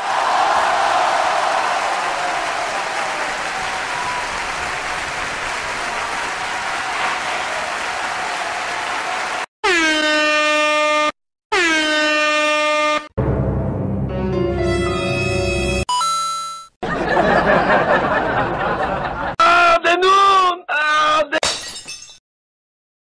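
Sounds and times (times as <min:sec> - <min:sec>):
air horn blasts: 0:09.6 - 0:13.1.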